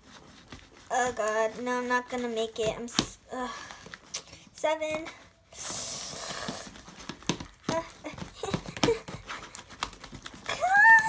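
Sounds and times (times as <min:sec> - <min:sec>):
utensil stirring slime in bowl: 0:00.0 - 0:03.2
person crying out: 0:10.5 - 0:11.0.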